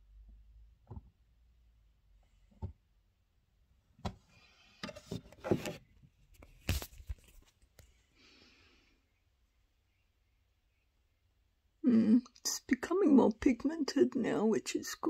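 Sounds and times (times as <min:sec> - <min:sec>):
scraping and rustling: 0:04.3 - 0:07.8.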